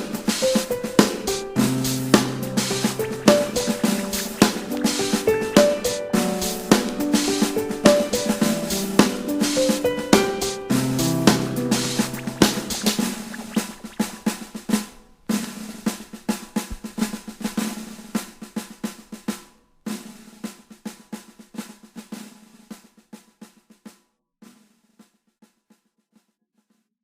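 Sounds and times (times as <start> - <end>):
snare drum hits: 0.0 - 20.6.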